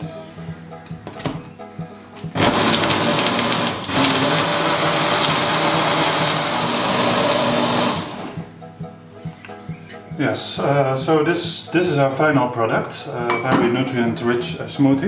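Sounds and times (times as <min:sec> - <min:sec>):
blender running: 0:02.4 - 0:08.5.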